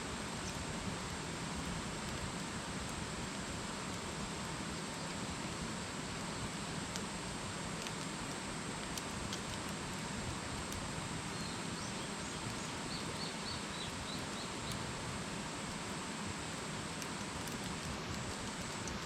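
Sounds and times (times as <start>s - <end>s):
campfire crackling and hissing: 0.0s - 19.0s.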